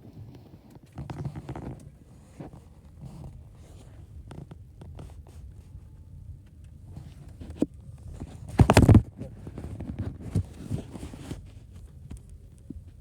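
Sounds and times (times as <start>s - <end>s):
car cabin rumble: 0.8s - 13.0s
clicks and rustling: 6.4s - 12.9s.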